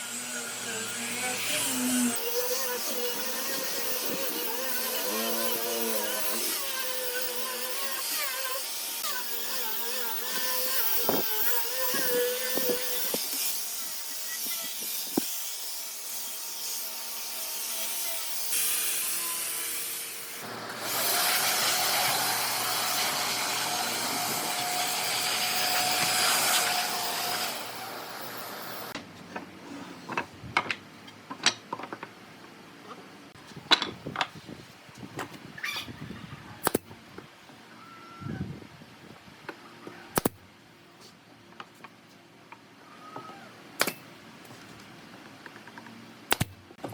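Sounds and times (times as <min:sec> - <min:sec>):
power tools working wood: 0:00.0 - 0:29.0.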